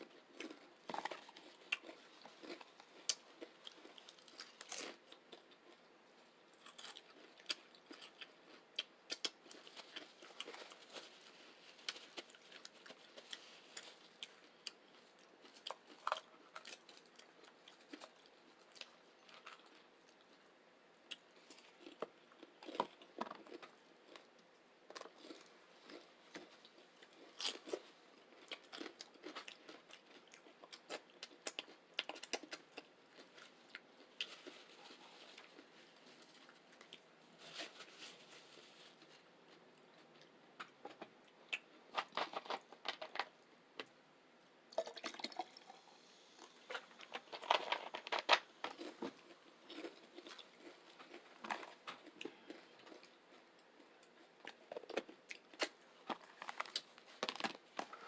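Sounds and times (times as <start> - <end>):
soft chewing: 0.0 - 44.0, 44.7 - 58.0
chips crunching: 0.1 - 5.8, 6.6 - 19.8, 24.9 - 33.3, 41.6 - 43.4, 46.7 - 58.0.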